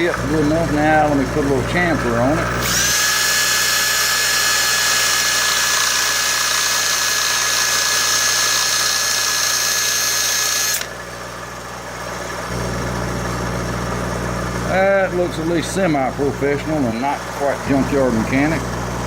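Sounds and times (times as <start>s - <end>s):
grinding tool whining on metal: 0.0s - 11.0s.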